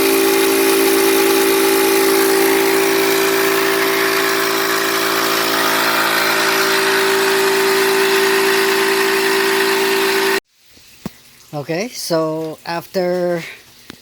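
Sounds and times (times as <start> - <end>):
air compressor humming: 0.0 - 10.4.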